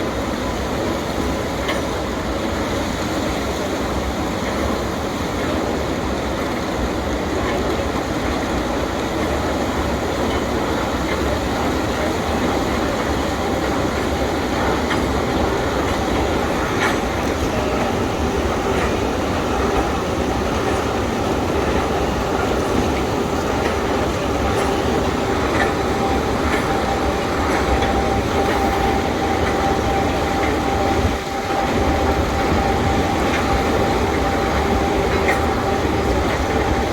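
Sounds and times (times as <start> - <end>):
steady machine whine: 9.2 - 36.9
excavator mechanical din: 11.5 - 36.9.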